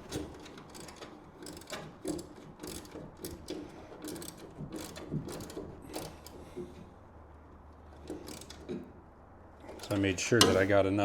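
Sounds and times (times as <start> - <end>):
hand ratchet clicking: 0.0 - 6.4, 8.0 - 8.8.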